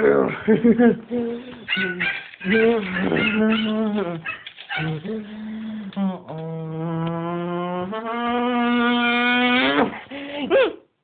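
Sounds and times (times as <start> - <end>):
puppy howling: 1.7 - 5.0.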